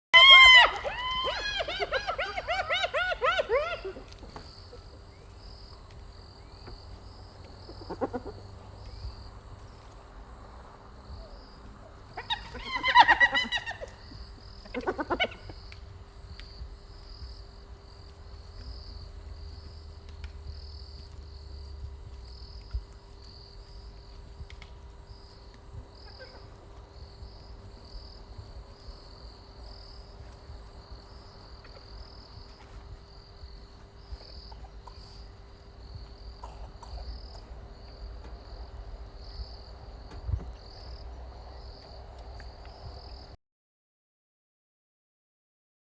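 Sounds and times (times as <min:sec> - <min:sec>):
hyena calling: 0:00.2 - 0:04.9, 0:07.7 - 0:08.5, 0:12.2 - 0:15.6, 0:26.0 - 0:26.7.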